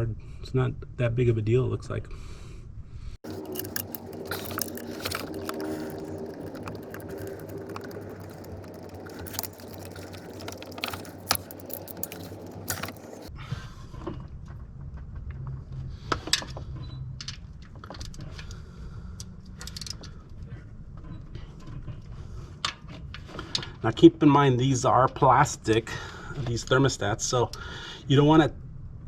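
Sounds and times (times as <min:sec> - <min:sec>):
hand tools clinking: 0:03.2 - 0:13.3.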